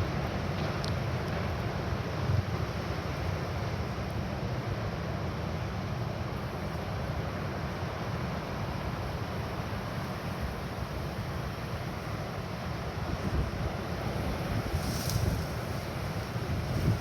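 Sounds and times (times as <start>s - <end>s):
small surf washing: 6.6s - 17.0s
wind buffeting microphone: 13.0s - 17.0s.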